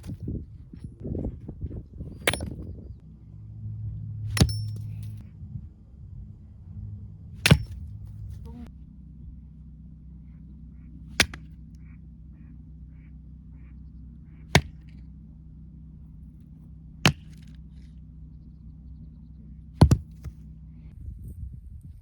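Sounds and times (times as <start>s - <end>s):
axe striking firewood: 0.0s - 0.2s, 2.2s - 2.6s, 4.3s - 5.2s, 7.4s - 8.4s, 11.2s - 11.5s, 14.5s - 15.0s, 17.1s - 17.6s, 19.8s - 20.4s.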